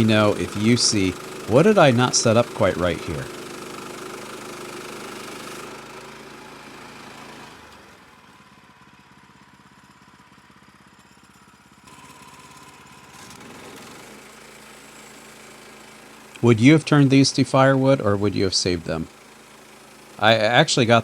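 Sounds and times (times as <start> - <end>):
gas engine idling: 0.0 - 5.9, 16.2 - 21.0.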